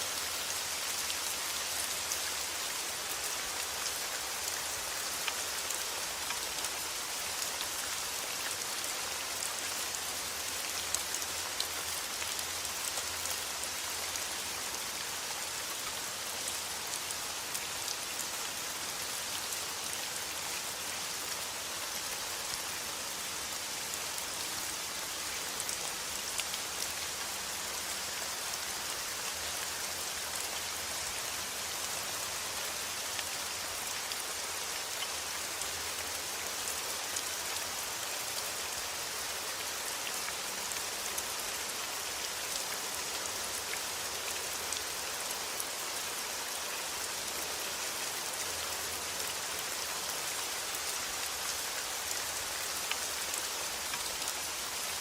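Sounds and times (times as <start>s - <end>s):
steady rain falling: 0.0s - 55.0s
raindrops ticking on a surface: 0.1s - 18.2s.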